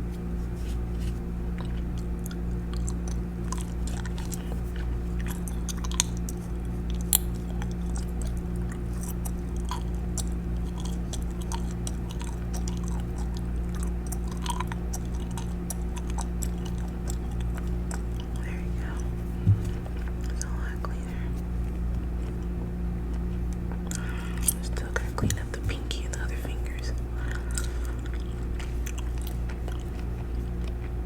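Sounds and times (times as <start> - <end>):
gum chewing and smacking: 0.0 - 31.0
low hum: 0.0 - 31.0.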